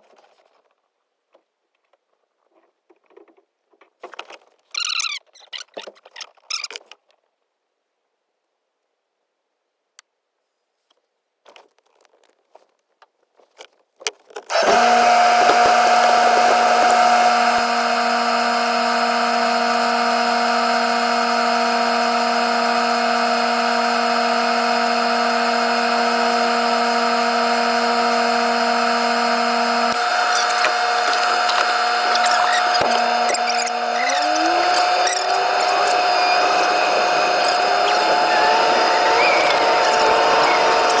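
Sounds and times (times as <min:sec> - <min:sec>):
motor-driven machine humming: 0:14.5 - 0:41.0.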